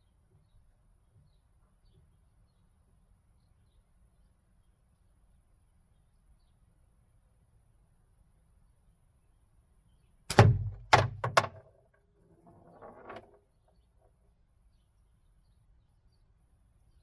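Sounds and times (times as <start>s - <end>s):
slingshot cracks: 10.3s - 11.5s
target rattle: 10.3s - 13.4s.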